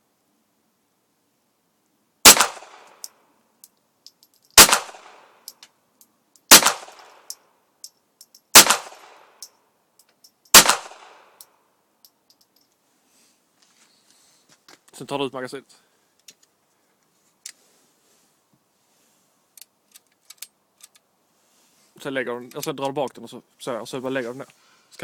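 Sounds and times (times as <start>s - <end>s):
gunshots with echo: 4.6s - 5.2s, 6.5s - 7.0s, 8.6s - 9.2s, 10.6s - 11.3s.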